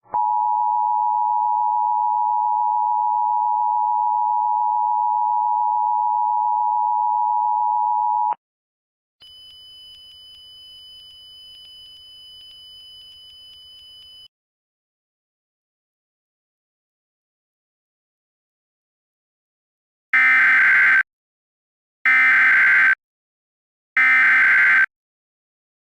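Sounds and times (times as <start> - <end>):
faint regular ticks: 9.2 - 14.3.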